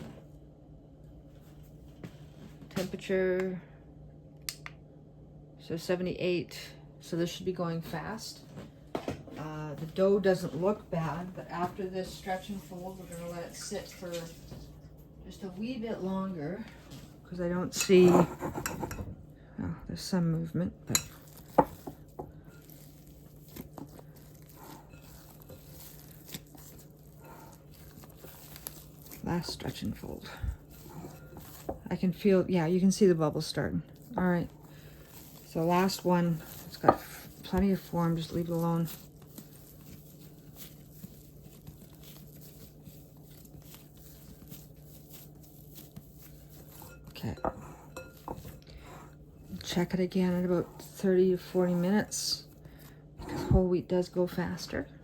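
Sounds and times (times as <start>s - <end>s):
low steady hum: 0.0s - 55.0s
wet dough squishing and tearing: 21.0s - 33.2s, 33.9s - 47.3s.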